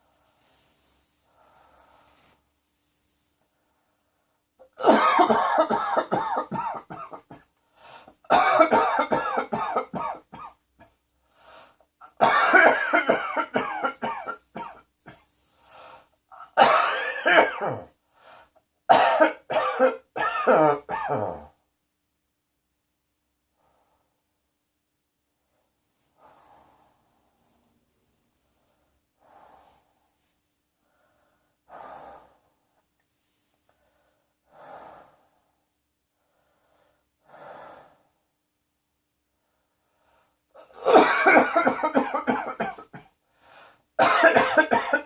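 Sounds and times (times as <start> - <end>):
faint breath: 0.0 - 4.5, 7.6 - 8.2, 11.2 - 11.9, 15.2 - 16.2, 18.1 - 18.6, 23.5 - 24.3, 25.4 - 27.8, 28.4 - 38.3, 39.3 - 40.4, 43.2 - 43.9
person coughing: 4.6 - 7.5, 8.3 - 10.6, 12.0 - 15.2, 16.4 - 17.9, 18.9 - 21.5, 40.6 - 43.1, 44.0 - 45.0.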